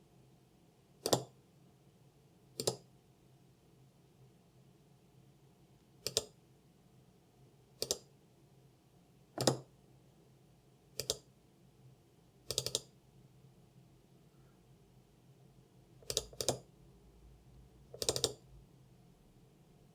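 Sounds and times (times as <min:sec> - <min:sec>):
mouse button clicks: 0:09.4 - 0:09.6.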